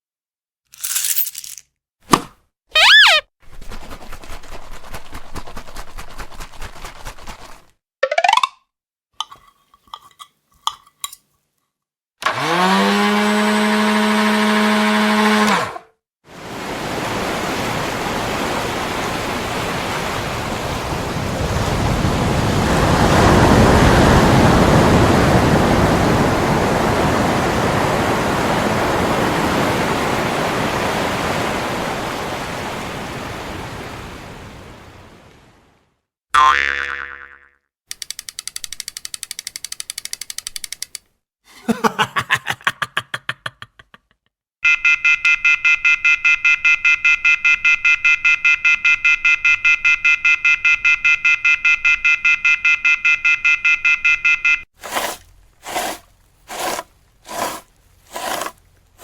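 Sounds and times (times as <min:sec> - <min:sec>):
short electronic blips: 0:02.8 - 0:03.2.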